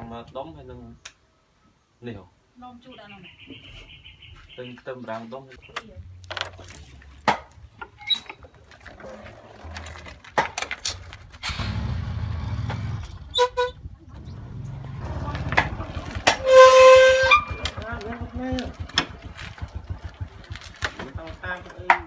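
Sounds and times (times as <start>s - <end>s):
vehicle passing with low rumble: 11.0s - 21.9s
short horn toots: 13.3s - 13.9s, 16.2s - 18.1s.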